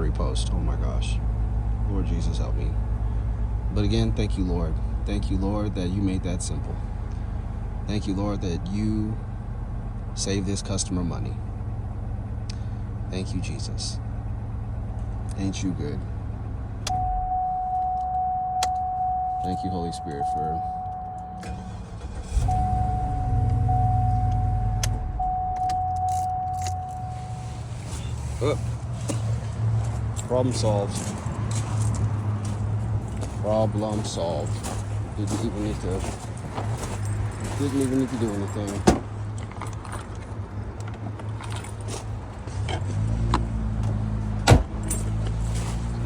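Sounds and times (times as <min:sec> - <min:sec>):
car engine idling: 0:00.0 - 0:46.0
thin high tone: 0:22.4 - 0:28.1
keys jingling: 0:25.5 - 0:28.2, 0:29.8 - 0:42.2, 0:44.8 - 0:45.8.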